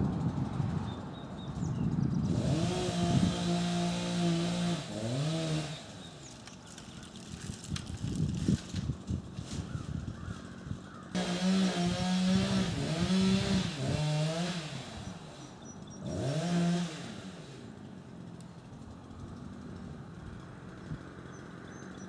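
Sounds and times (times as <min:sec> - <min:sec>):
chainsaw revving: 0:02.2 - 0:07.8, 0:11.0 - 0:19.7.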